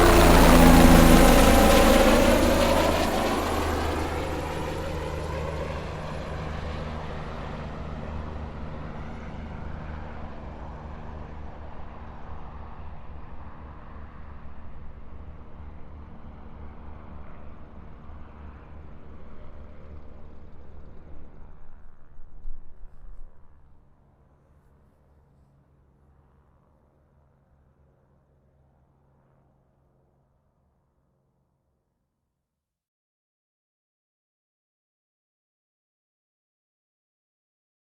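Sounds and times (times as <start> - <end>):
helicopter rotor and turbine: 0.0 - 23.7.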